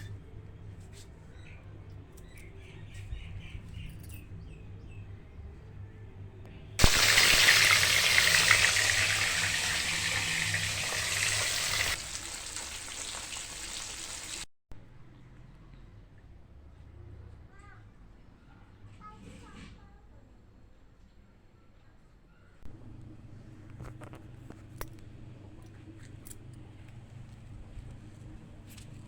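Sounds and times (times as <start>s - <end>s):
water running from a tap: 6.8s - 14.5s.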